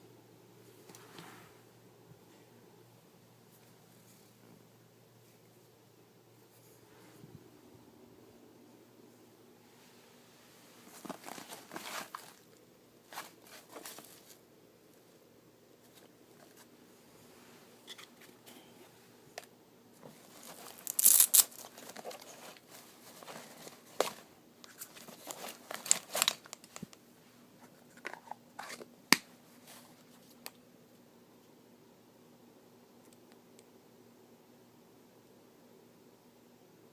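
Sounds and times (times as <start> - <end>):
rustling and crinkling: 3.4 - 5.7, 9.6 - 30.6.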